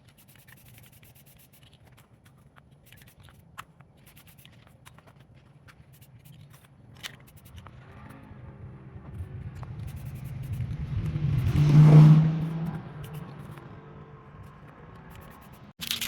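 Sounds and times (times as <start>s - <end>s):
vehicle engine passing by: 7.5s - 15.7s.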